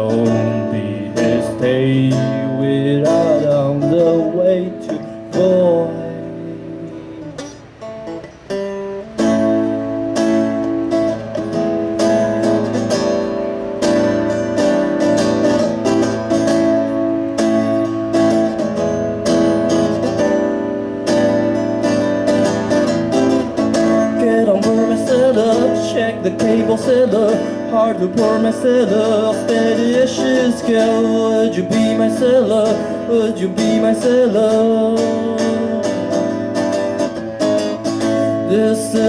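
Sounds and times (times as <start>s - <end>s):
guitar chord strumming: 0.0s - 39.0s.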